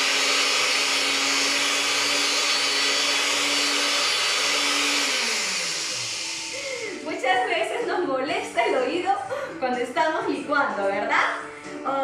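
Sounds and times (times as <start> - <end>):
blender running: 0.0 - 7.4.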